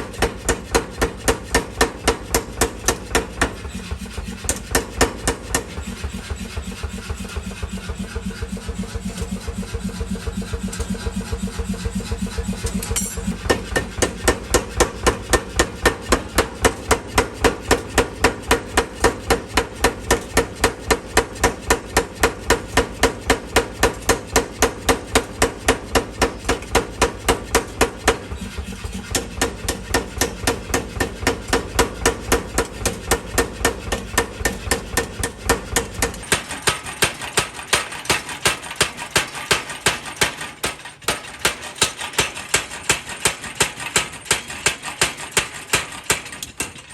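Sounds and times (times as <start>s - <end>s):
power hammer pounding steel: 0.0s - 46.9s
motor hum: 2.6s - 17.4s.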